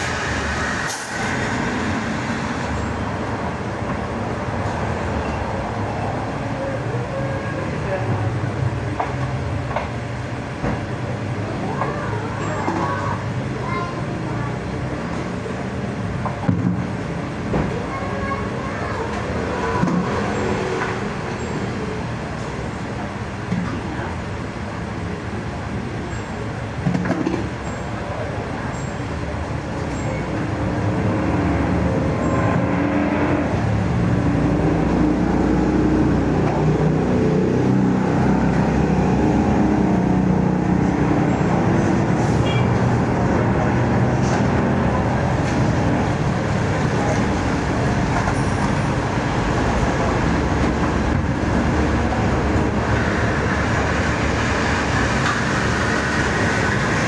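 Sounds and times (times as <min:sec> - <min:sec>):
road and traffic noise: 0:00.0 - 0:57.0
motor vehicle running: 0:29.5 - 0:57.0.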